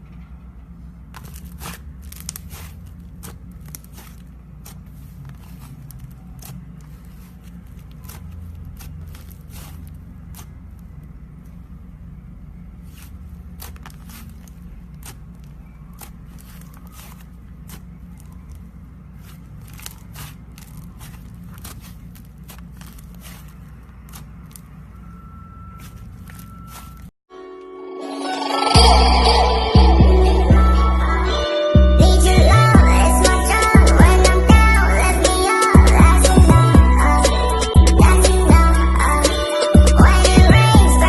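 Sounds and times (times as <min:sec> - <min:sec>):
slime crackling and popping: 0:01.2 - 0:10.5, 0:12.8 - 0:24.8
steady low hum: 0:28.7 - 0:41.0.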